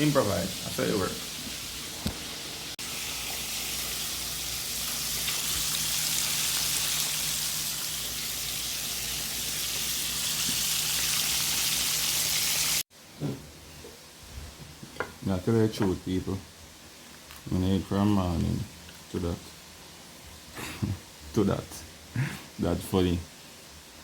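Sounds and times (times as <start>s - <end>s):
fish frying in hot oil: 2.8s - 12.8s.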